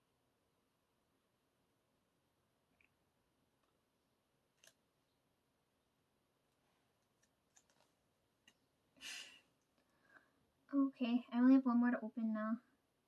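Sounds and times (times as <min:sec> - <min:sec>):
faint clicks and taps: 0:06.5 - 0:08.7.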